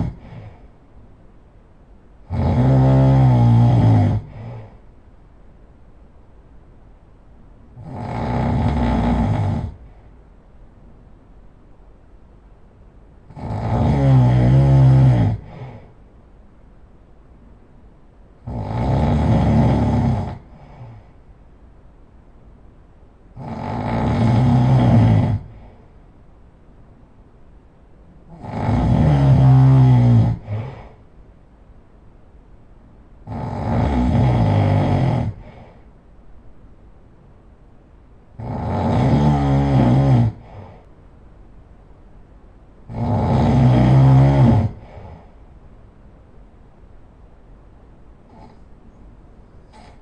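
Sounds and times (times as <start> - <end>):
person snoring loudly: 0.0 - 0.7, 2.3 - 4.8, 7.8 - 10.0, 13.3 - 15.9, 18.4 - 21.1, 23.4 - 25.8, 28.3 - 31.0, 33.2 - 35.8, 38.4 - 40.8, 42.9 - 45.3
soft breath: 0.0 - 0.9, 3.8 - 5.0, 15.2 - 16.2, 20.4 - 21.4, 24.8 - 26.2, 30.3 - 31.2, 35.3 - 36.1, 40.3 - 41.1, 44.6 - 45.6.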